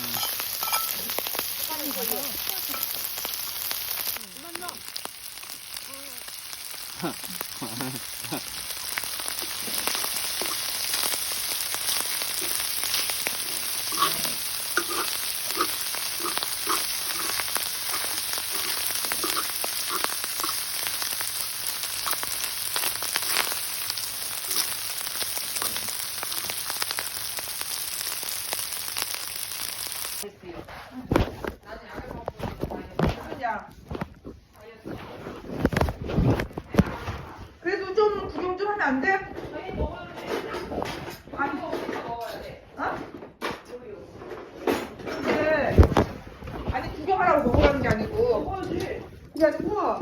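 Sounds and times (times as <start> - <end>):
meat sizzling and spattering: 0.0 - 30.3.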